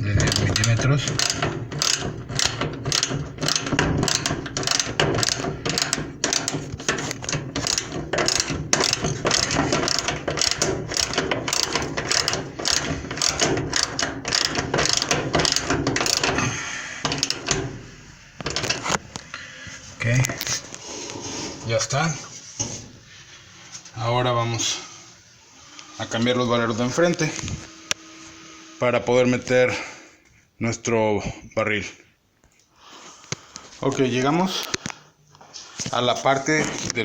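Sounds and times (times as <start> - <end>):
ratchet wrench clicking: 0.1 - 17.7.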